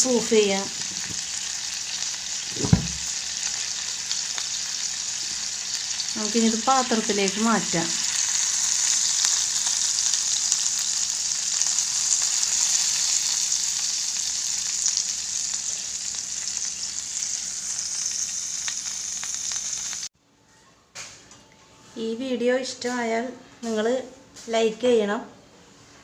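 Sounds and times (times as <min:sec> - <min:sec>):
squid sizzling in hot oil: 0:00.0 - 0:20.1.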